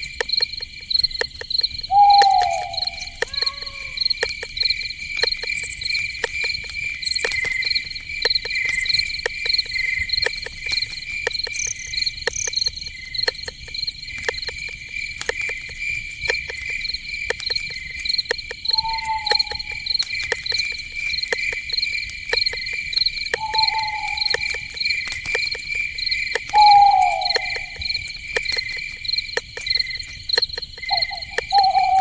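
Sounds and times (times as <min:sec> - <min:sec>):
crickets chirping: 0:00.0 - 0:32.0
sharp clicks: 0:00.0 - 0:32.0.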